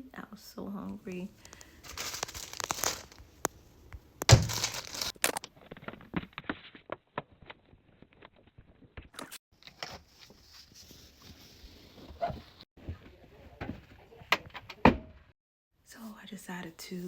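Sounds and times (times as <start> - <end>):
crinkling and tearing: 1.4 - 3.6, 4.2 - 10.2.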